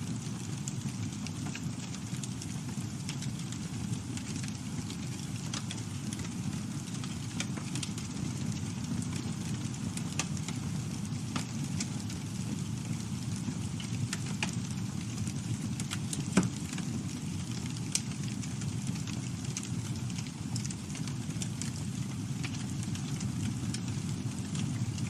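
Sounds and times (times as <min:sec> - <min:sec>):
campfire crackling and popping: 0:00.1 - 0:25.0.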